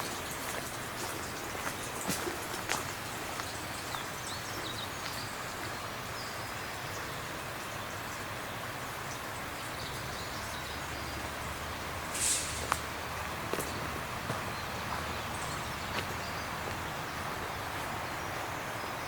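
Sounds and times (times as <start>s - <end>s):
steady outdoor hiss: 0.0s - 19.0s.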